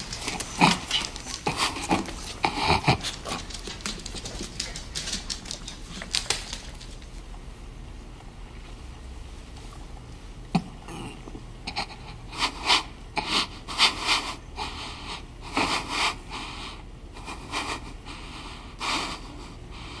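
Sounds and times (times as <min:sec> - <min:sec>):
ragged breathing with sniffs: 0:00.0 - 0:05.0, 0:11.7 - 0:20.0.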